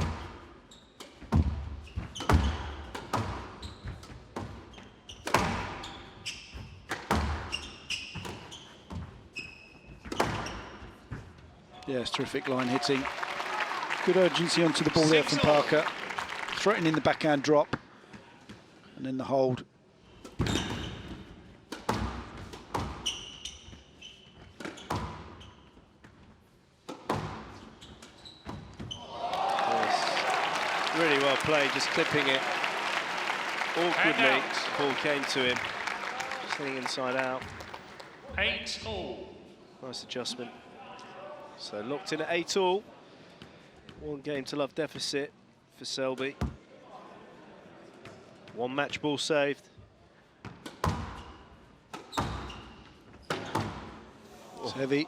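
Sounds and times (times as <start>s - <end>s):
shoes squeaking on court floor: 0.0s - 11.8s, 20.1s - 29.2s, 37.4s - 38.5s, 50.4s - 54.0s
squash ball hitting rackets and walls: 1.0s - 9.1s, 10.0s - 11.4s, 20.2s - 23.4s, 24.5s - 25.3s, 26.8s - 29.0s, 50.4s - 51.3s, 51.9s - 54.1s.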